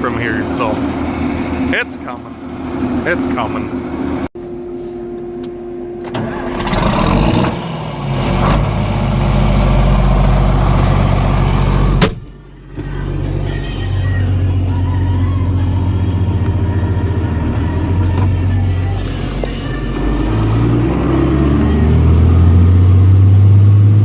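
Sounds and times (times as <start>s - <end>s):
large engine running: 0.0s - 4.3s, 6.0s - 24.0s.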